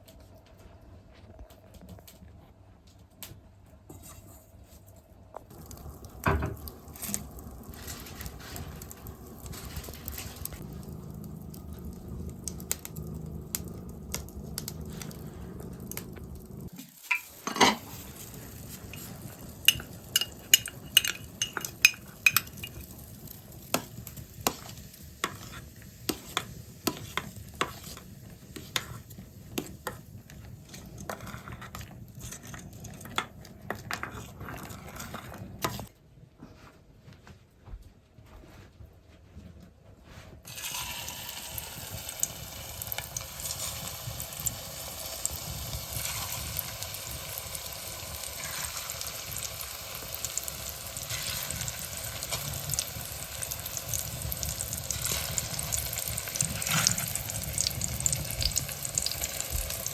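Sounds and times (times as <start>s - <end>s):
sizzling hiss: 5.5s - 31.2s, 40.5s - 59.9s
metal utensil clinking on pan: 19.7s - 22.9s.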